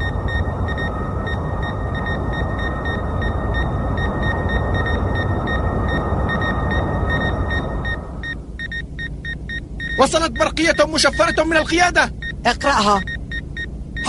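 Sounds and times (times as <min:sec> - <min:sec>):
rapid high electronic beeping: 0:00.0 - 0:14.0.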